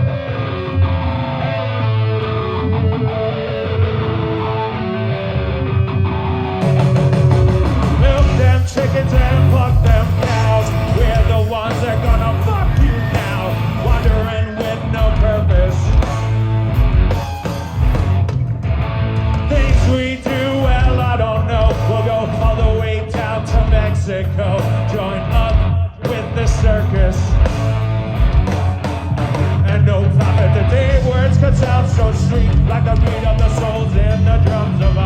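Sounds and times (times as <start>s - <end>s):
bass guitar: 0.0s - 35.0s
electric guitar: 0.0s - 35.0s
drums and cymbals: 6.6s - 35.0s.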